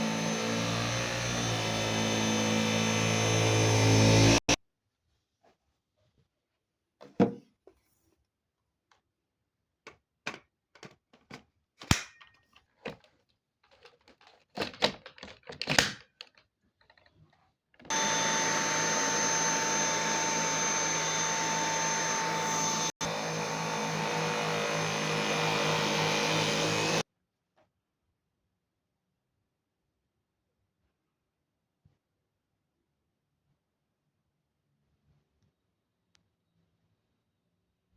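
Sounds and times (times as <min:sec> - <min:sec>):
cordless vacuum whining: 0:00.0 - 0:04.6, 0:17.9 - 0:27.0.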